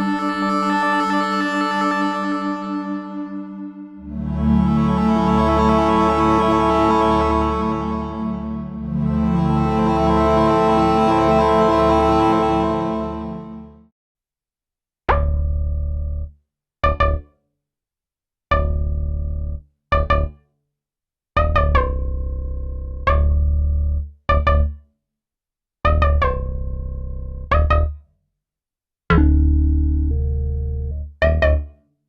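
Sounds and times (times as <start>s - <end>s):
synthesizer bass notes: 2.0s - 13.8s, 29.1s - 31.7s.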